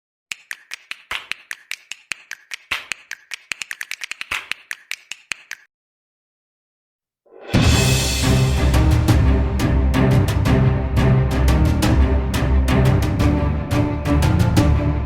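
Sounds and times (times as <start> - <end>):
rapid sharp clicks: 0.3 - 5.7.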